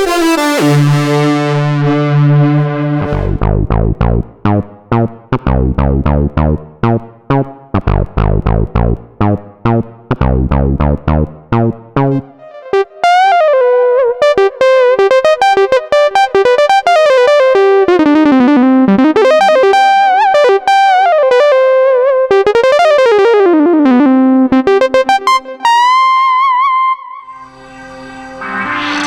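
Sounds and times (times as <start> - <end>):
synth melody with pitch slides: 0.0 - 3.8, 27.2 - 29.0.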